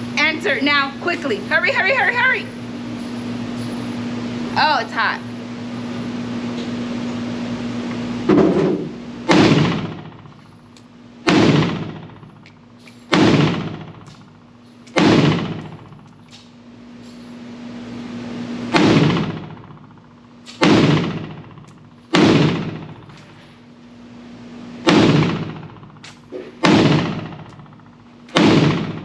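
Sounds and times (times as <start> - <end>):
pistol shots echoing: 11.2 - 12.3, 13.1 - 14.2, 14.9 - 16.1, 18.7 - 19.8, 20.6 - 23.1, 24.8 - 27.7, 28.3 - 29.0.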